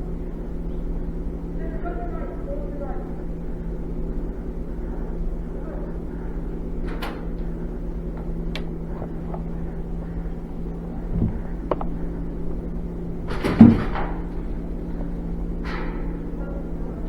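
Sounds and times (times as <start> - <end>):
steady low hum: 0.0 - 17.0
sharp clicks and knocks: 8.2 - 10.1, 11.0 - 12.7
thump with clatter: 13.3 - 14.2.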